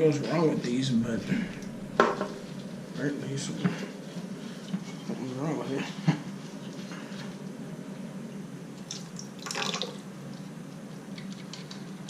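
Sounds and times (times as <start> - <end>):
water trickling in toilet tank: 8.9 - 10.0.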